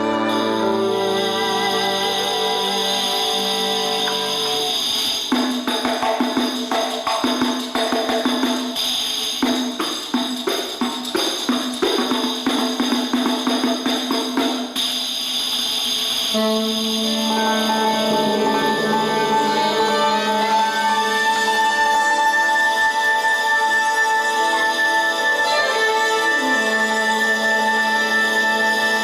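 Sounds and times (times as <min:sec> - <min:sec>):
sustained notes: 0:00.0 - 0:05.0, 0:16.4 - 0:29.0
rapid irregular percussion strikes: 0:00.0 - 0:29.0.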